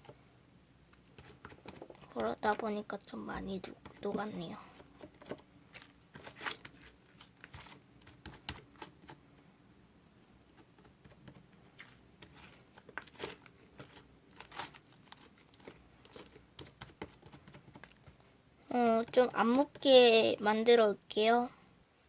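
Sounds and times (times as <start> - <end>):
small clicks and crackles of slime: 10.8 - 18.0.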